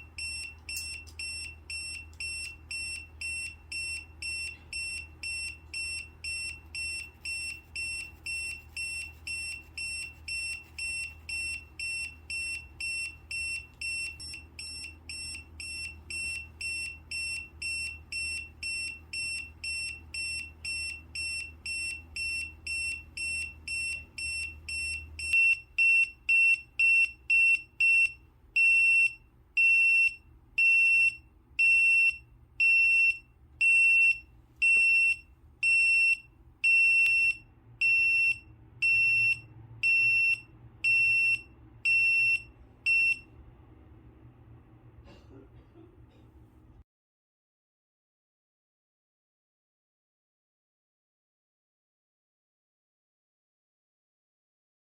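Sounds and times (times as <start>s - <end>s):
alarm beeping: 0.0s - 43.3s.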